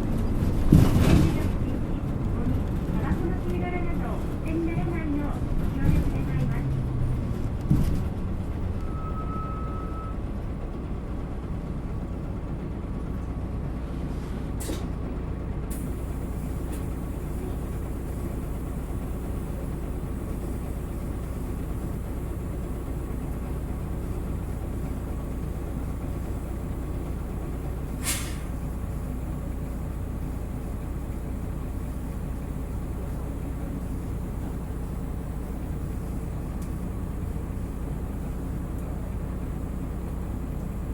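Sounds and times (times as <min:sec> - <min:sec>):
diesel bus engine running: 0:00.0 - 0:40.9
short beep: 0:08.7 - 0:10.2
air brake hisses: 0:28.0 - 0:28.6.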